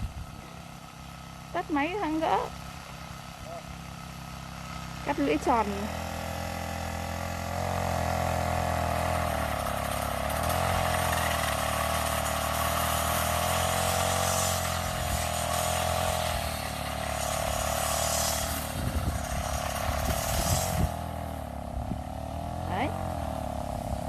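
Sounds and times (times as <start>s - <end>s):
brush cutter engine running: 0.0s - 24.0s.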